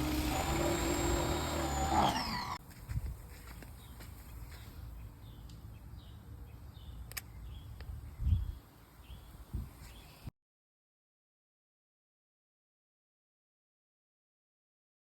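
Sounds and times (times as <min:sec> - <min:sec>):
sharp click: 0:07.1 - 0:07.3.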